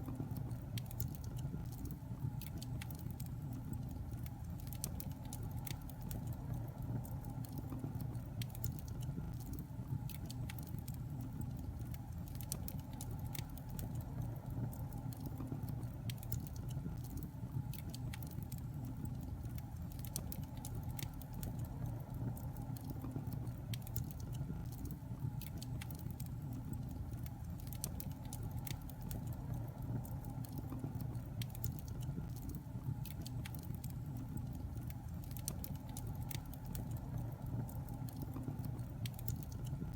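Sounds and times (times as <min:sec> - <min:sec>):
burning wood crackling: 0:00.0 - 0:39.9.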